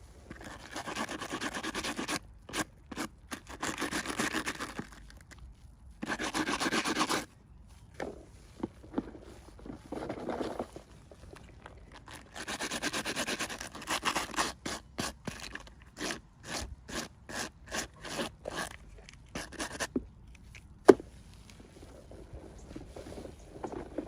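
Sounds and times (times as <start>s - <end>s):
hands scraping packaging: 0.3s - 5.3s, 6.0s - 7.3s, 9.0s - 20.5s.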